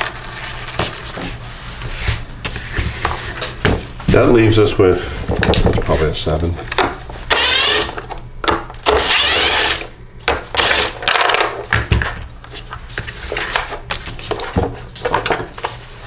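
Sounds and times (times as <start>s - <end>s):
metal tools clinking: 11.0s - 11.6s.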